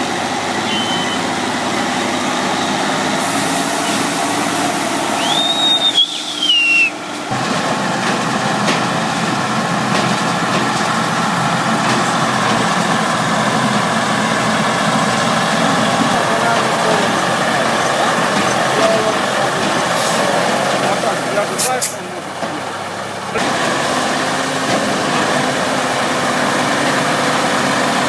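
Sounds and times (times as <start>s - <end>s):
diesel engine running: 0.0s - 28.0s
high whistle-like squeal: 0.6s - 1.3s, 5.0s - 7.0s.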